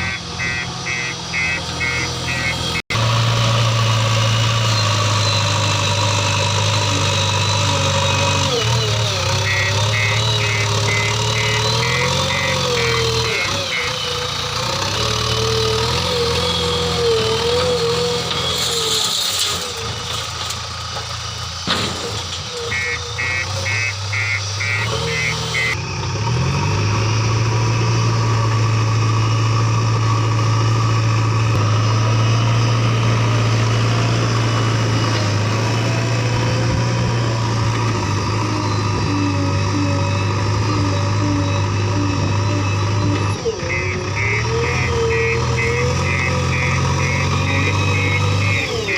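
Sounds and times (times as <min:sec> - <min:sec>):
short beeps: 0:00.0 - 0:02.9, 0:09.4 - 0:14.0, 0:22.7 - 0:25.8, 0:42.6 - 0:48.9
diesel engine running: 0:00.0 - 0:48.9.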